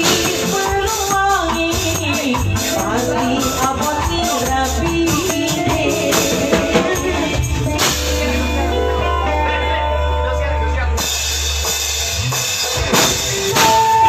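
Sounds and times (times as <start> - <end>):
bass: 0.0 - 14.0
live band music: 0.0 - 14.0
sharp drum hit: 11.3 - 14.0.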